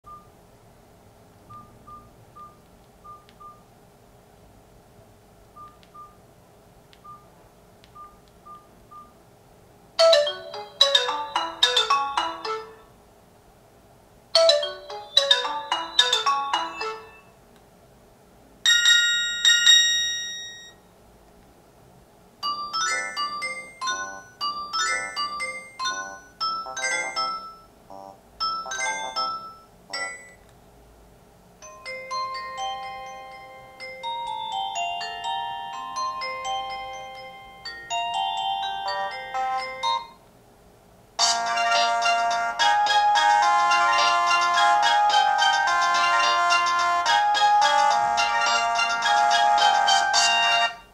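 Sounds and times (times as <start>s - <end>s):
chiming ringtone melody: 10.0s - 12.9s, 14.4s - 17.3s, 18.7s - 20.8s, 22.4s - 30.4s, 31.6s - 40.2s, 41.2s - 50.9s
fast bright ringtone tune: 10.0s - 12.9s, 14.4s - 17.3s, 18.7s - 20.8s, 22.4s - 30.4s, 31.6s - 40.2s, 41.2s - 50.9s
held ringing tone: 18.7s - 20.9s, 28.4s - 30.4s.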